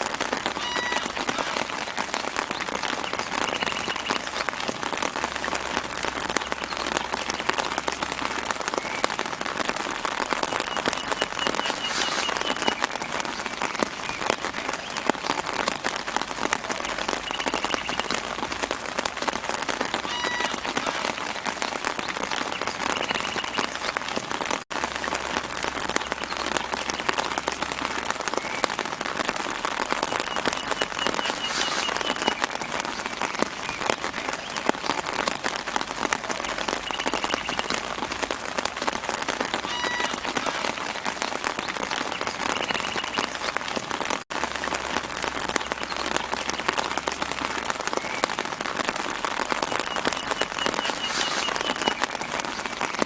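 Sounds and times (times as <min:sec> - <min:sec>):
light rain pattering on leaves: 0:00.0 - 0:53.0
bird high trill: 0:10.5 - 0:12.8.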